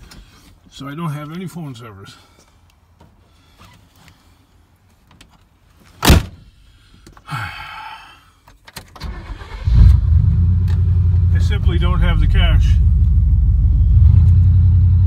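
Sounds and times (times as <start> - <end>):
vehicle door slamming: 6.0 - 6.5
engine cranking and running: 9.0 - 14.6.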